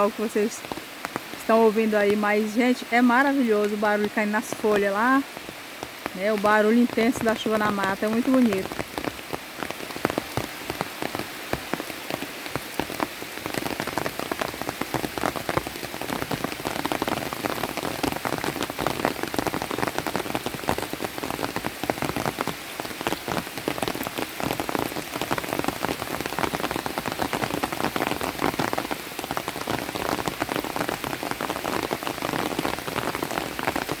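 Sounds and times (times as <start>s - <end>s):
heavy rain on leaves: 0.0s - 34.0s.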